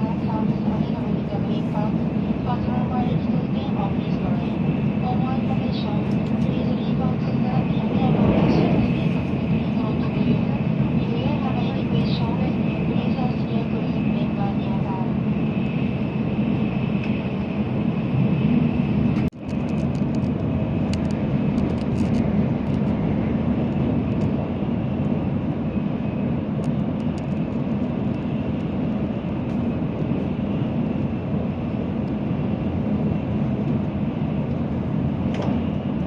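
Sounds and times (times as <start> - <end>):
train cabin rumble: 0.0 - 15.1.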